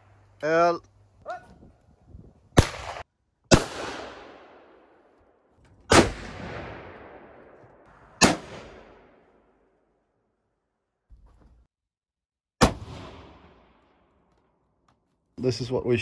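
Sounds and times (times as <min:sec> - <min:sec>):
rifle shots with echo: 0:02.6 - 0:05.1, 0:05.9 - 0:09.6, 0:12.6 - 0:14.0.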